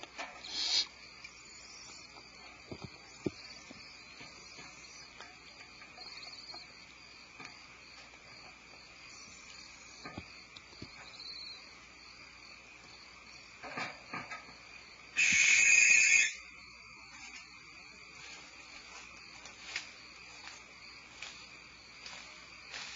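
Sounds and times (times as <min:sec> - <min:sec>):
owl rasping hiss: 0:00.4 - 0:01.0, 0:15.1 - 0:16.4.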